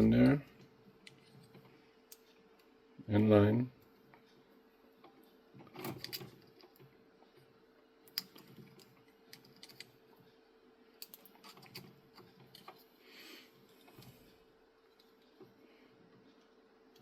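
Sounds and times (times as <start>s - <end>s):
plastic parts clicking: 8.1s - 9.9s.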